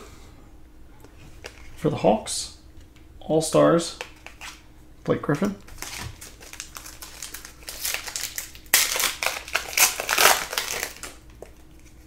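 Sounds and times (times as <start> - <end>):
plastic wrapper crinkling: 5.7 - 12.0.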